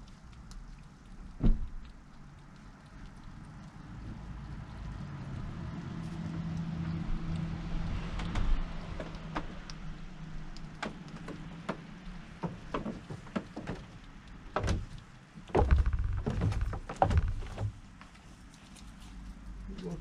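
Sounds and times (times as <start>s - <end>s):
hedgehogs crunching seeds: 0.0s - 20.0s
knocks and thumps: 10.8s - 17.8s.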